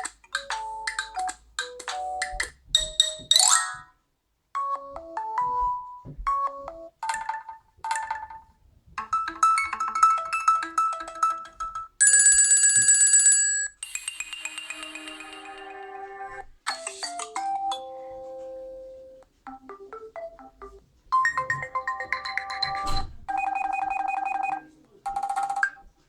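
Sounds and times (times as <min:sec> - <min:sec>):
phone ringtone snippets: 0:09.2 - 0:25.8.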